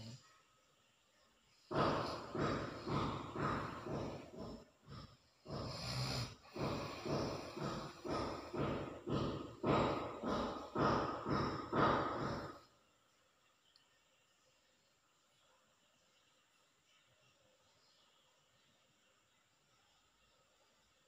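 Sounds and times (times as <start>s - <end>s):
snoring: 0.0s - 0.2s, 1.8s - 8.8s.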